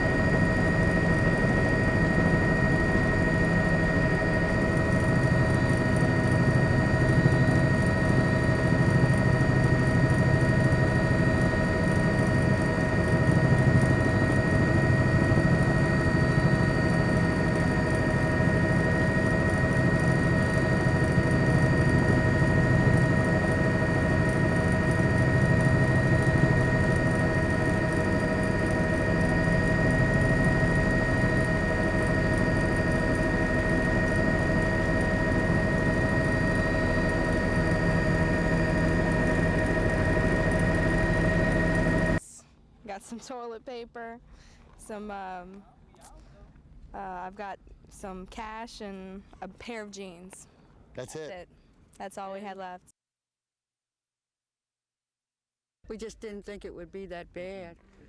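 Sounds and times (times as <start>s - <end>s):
high whining tones: 0.0s - 42.2s
engine drone: 0.0s - 42.4s.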